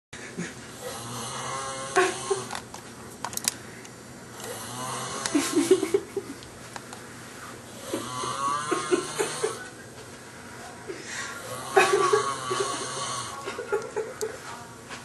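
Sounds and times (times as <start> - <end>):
man snoring loudly: 0.8 - 2.5, 4.3 - 5.6, 7.7 - 9.6, 11.4 - 13.4.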